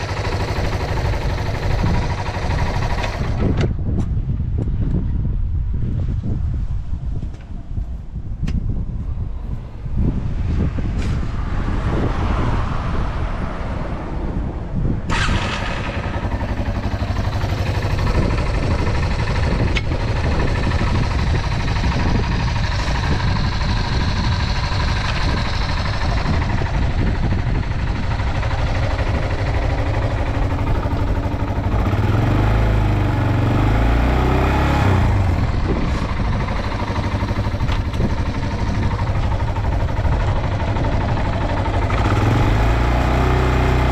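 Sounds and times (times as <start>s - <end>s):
motorcycle engine running: 0.0s - 5.2s, 15.0s - 43.9s.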